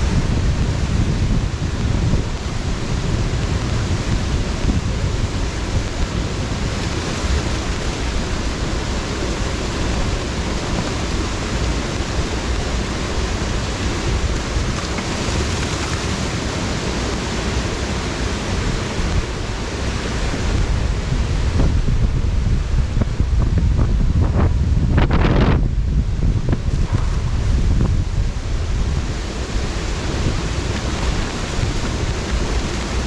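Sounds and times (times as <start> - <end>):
water pouring over falls: 0.1 - 21.0, 28.5 - 33.0.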